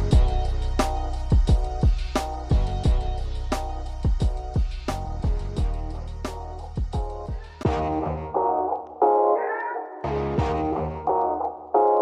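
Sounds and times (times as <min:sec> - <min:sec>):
music with drum beat and bass: 0:00.0 - 0:08.1.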